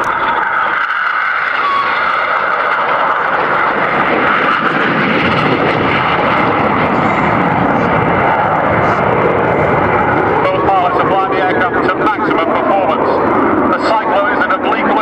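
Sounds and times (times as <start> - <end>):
jet aircraft roaring: 0.0 - 15.0.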